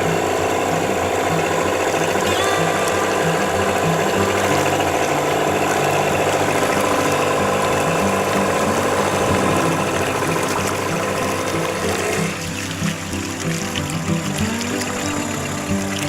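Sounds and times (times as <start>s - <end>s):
fast ticking rhythm: 0.0s - 16.0s.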